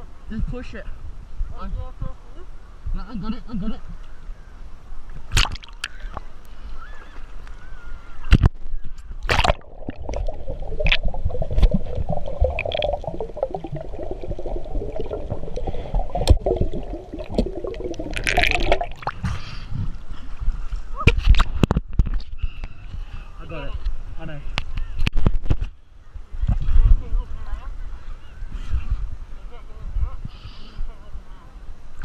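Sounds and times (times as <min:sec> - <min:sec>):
water sloshing and gurgling: 0:09.1 - 0:22.3
steady bubbling gurgle: 0:09.2 - 0:20.5.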